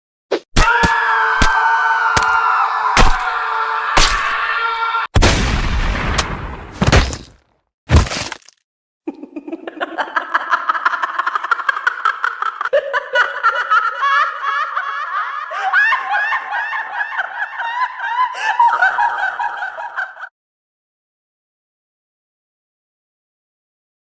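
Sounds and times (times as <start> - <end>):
rapid laughter: 9.1 - 20.3.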